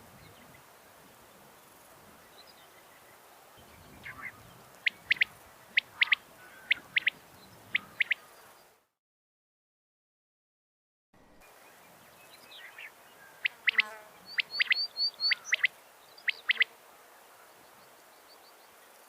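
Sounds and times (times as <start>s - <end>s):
quail calling: 4.0s - 8.4s, 13.3s - 15.7s, 16.3s - 16.7s.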